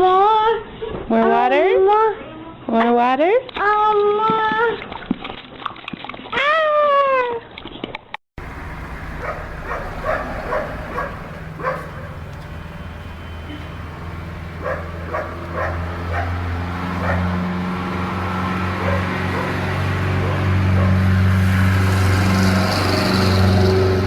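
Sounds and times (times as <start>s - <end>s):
engine hum: 8.4s - 24.0s
dog barking: 9.2s - 12.2s, 14.6s - 17.4s, 18.8s - 21.0s.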